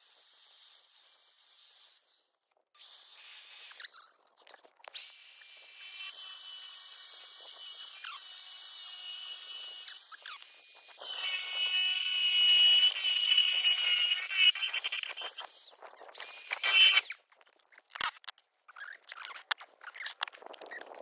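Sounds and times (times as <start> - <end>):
power tool whining: 5.0 - 17.2.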